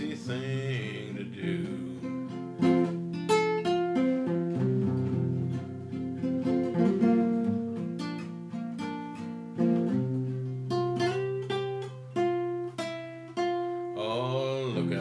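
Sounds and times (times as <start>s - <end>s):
acoustic guitar playing: 0.0s - 15.0s.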